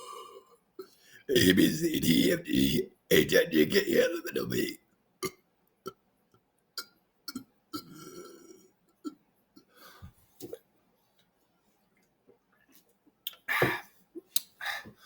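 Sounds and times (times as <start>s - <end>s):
man burping: 1.3s - 5.4s, 6.8s - 8.7s
man gulping air: 6.8s - 9.2s.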